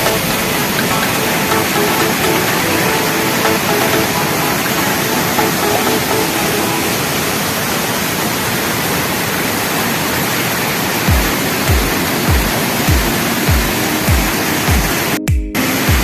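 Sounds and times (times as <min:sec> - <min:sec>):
background music: 0:00.0 - 0:08.1
waterfall rushing: 0:00.0 - 0:15.9.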